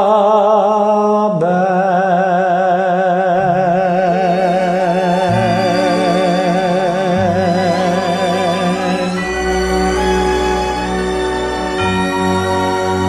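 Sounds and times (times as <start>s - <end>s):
sustained musical accompaniment: 3.4s - 13.0s.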